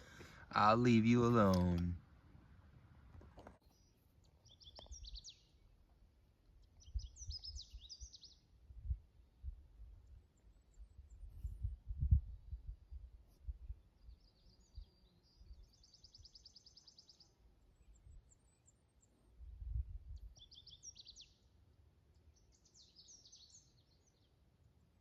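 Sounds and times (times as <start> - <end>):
songbirds singing: 3.4 - 8.6, 13.7 - 25.0.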